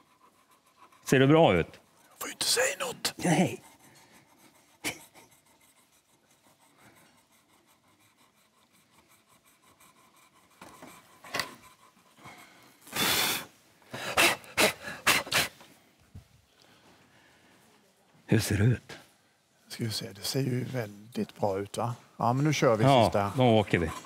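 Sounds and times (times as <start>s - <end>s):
coin scratching card: 2.2s - 6.6s.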